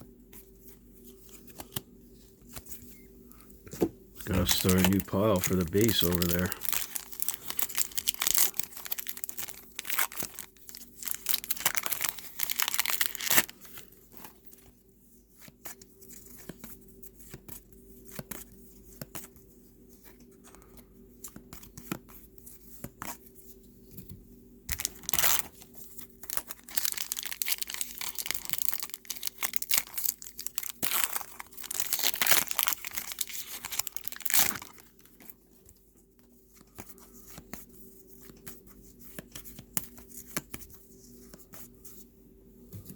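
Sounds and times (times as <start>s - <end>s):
cards being handled: 0.4s - 3.0s, 3.7s - 14.4s, 24.7s - 35.8s, 36.5s - 41.7s
card pack wrappers tearing: 4.3s - 13.8s, 24.7s - 35.3s.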